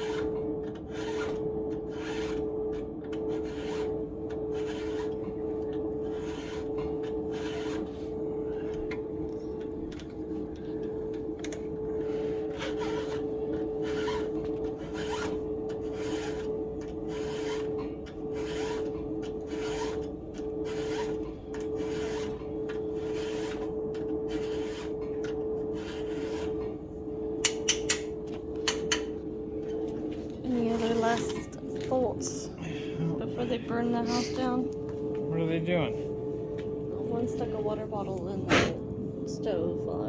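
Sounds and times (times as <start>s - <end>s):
file rasping on chain teeth: 0.0s - 2.4s, 3.3s - 5.4s, 6.0s - 7.9s, 12.0s - 16.5s, 17.1s - 17.8s, 18.4s - 23.7s, 24.3s - 25.0s, 25.8s - 26.6s
steady hum: 0.0s - 40.0s.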